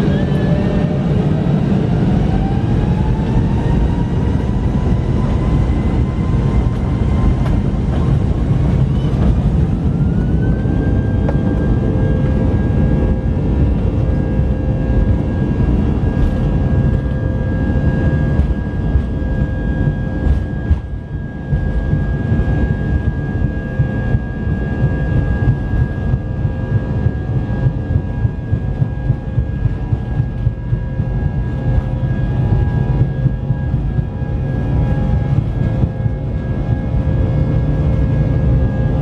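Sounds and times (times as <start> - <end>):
jet engines spooling up: 0.0 - 39.0
low engine rumble: 0.0 - 39.0.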